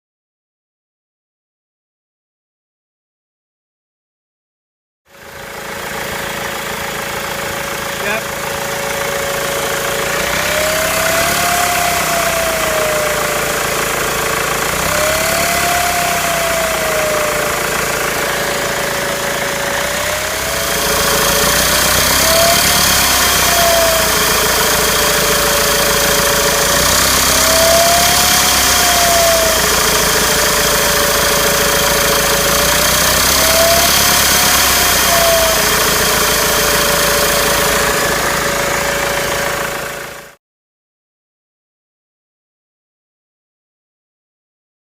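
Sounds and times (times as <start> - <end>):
diesel engine idling: 5.1 - 40.4
engine revving: 5.6 - 40.4
loud engine whistle: 8.0 - 39.6.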